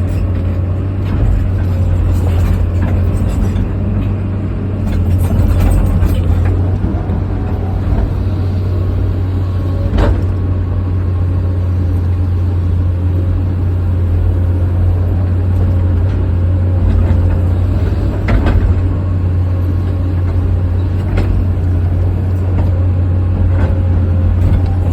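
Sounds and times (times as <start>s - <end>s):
excavator engine droning: 0.0s - 24.9s.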